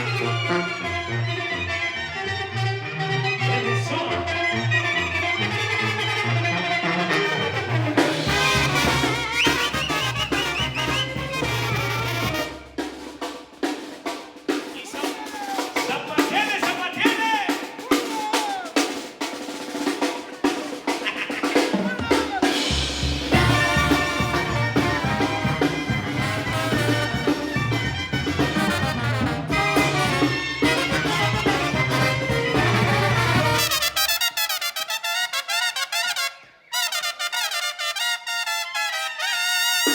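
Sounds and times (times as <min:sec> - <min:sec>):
banda playing live: 0:00.0 - 0:36.2, 0:36.8 - 0:39.9
drum hits: 0:21.9 - 0:33.8.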